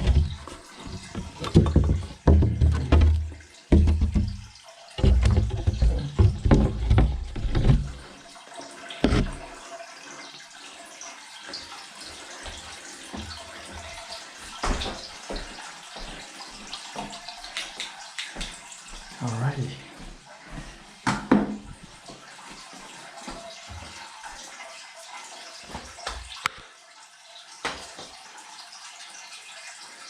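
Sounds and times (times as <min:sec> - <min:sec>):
water running: 0:00.0 - 0:30.0
sharp knocks: 0:01.1 - 0:08.0.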